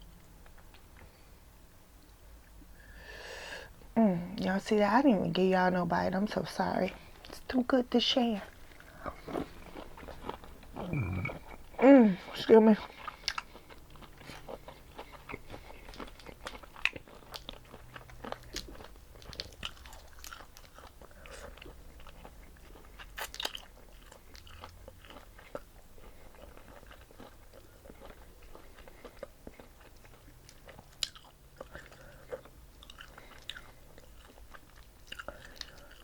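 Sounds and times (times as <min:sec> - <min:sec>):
person chewing: 0:08.5 - 0:36.0.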